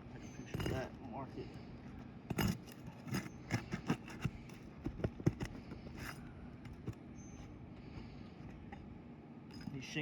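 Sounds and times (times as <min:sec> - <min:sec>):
hand tool scraping shingles: 0:02.3 - 0:06.8.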